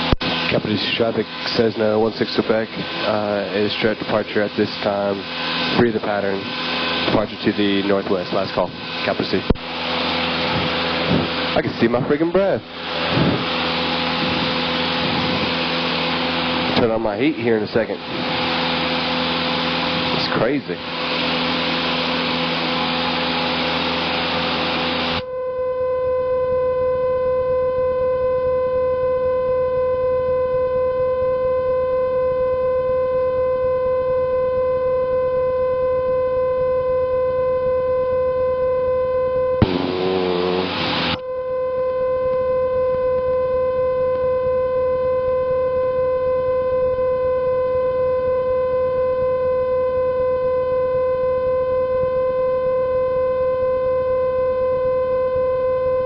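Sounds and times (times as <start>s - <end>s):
steady tone with overtones: 0.0s - 28.8s, 34.7s - 47.8s
aircraft cabin engine roar: 0.0s - 56.0s.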